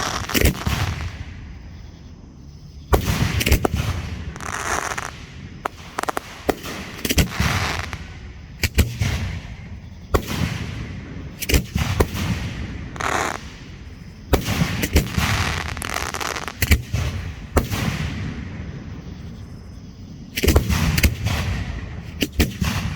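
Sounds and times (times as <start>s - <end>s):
fireworks crackling: 0.0s - 1.4s, 3.0s - 9.6s, 10.2s - 18.3s
fireworks banging: 0.0s - 1.6s, 2.9s - 19.0s.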